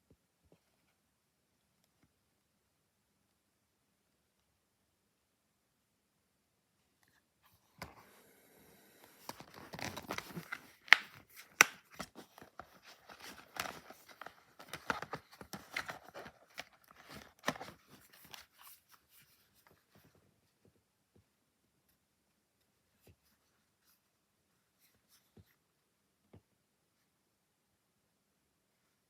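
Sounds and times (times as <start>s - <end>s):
packaging crinkling and tearing: 9.2s - 18.8s.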